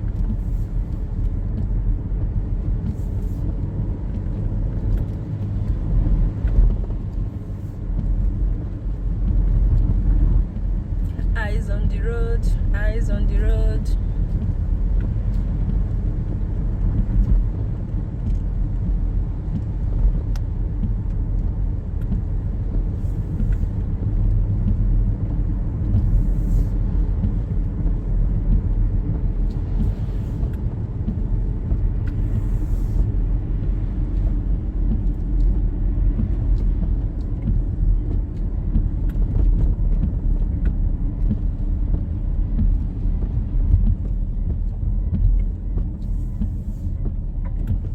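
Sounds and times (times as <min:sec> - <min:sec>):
car engine and tyres rumbling: 0:00.0 - 0:47.9
tyres hissing on wet road: 0:26.1 - 0:27.1, 0:32.1 - 0:34.3.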